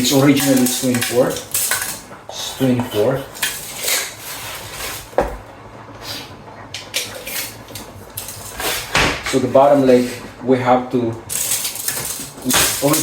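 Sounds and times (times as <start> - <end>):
plywood pieces and tools clattering: 0.0 - 2.0, 11.3 - 13.0.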